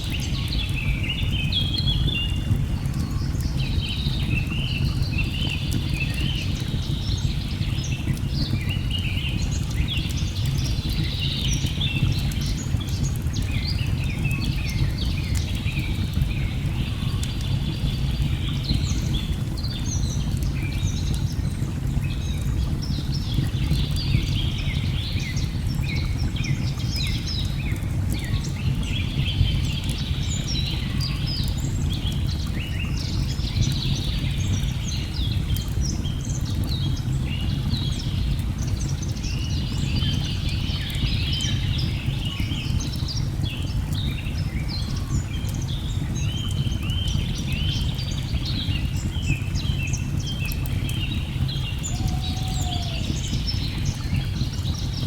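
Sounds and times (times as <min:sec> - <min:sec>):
log fire crackling: 0:45.0 - 0:55.0
forest birds chirping: 0:50.2 - 0:54.8
falling water rushing: 0:51.5 - 0:54.1.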